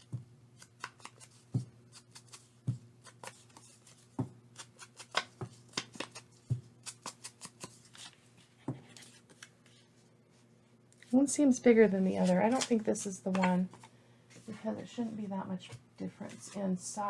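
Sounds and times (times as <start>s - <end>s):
faint electrical hum: 0.0s - 17.0s
paper pieces tapping and rustling: 0.6s - 8.2s.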